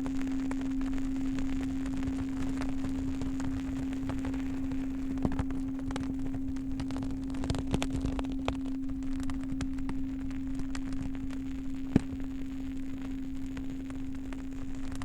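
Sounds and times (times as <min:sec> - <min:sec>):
wood fire crackling and popping: 0:00.5 - 0:15.0.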